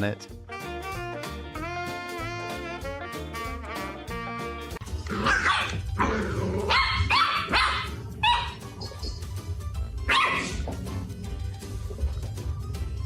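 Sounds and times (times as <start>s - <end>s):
background music: 0.0s - 13.0s
dog barking: 5.1s - 8.8s, 10.0s - 10.8s.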